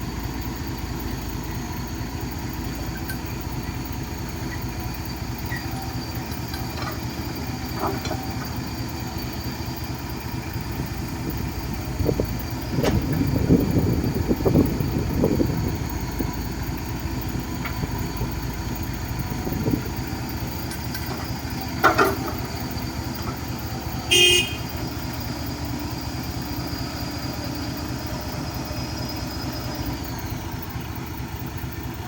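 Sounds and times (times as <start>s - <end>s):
excavator diesel engine running: 0.0s - 32.0s
horn toot: 24.1s - 24.7s.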